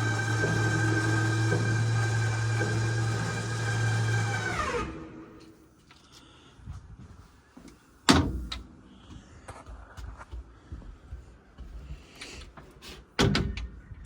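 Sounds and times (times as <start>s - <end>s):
door clunking: 8.1s - 8.7s, 13.2s - 13.8s.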